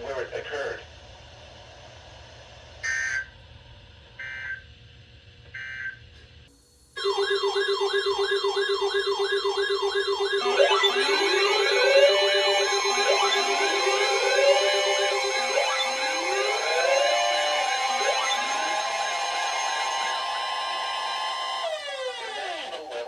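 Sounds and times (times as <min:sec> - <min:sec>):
electronic siren-like alarm: 0:07.0 - 0:23.0
warbling data bursts: 0:07.0 - 0:23.0.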